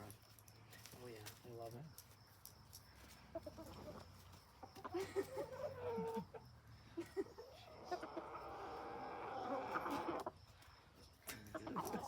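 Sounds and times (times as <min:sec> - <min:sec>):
chickens clucking: 0:03.2 - 0:06.6, 0:07.2 - 0:10.5, 0:11.4 - 0:12.0
chicken drawn-out call: 0:07.6 - 0:10.4.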